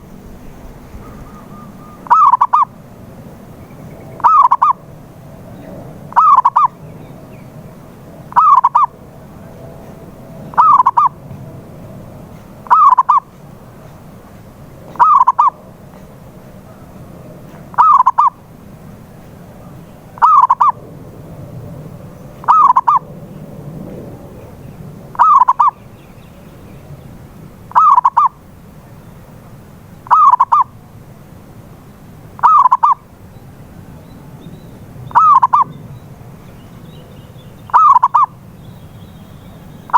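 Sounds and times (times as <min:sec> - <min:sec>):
dove cooing: 0:00.6 - 0:02.8, 0:04.1 - 0:07.0, 0:08.3 - 0:11.3, 0:12.6 - 0:14.2, 0:14.8 - 0:18.5, 0:19.4 - 0:21.1, 0:21.8 - 0:25.9, 0:27.7 - 0:28.4, 0:30.0 - 0:30.7, 0:32.4 - 0:33.0, 0:35.0 - 0:36.0, 0:37.7 - 0:38.4.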